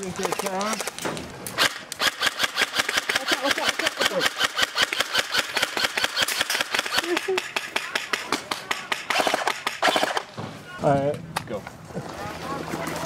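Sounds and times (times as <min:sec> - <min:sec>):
airsoft gun firing full auto: 0:01.6 - 0:10.3.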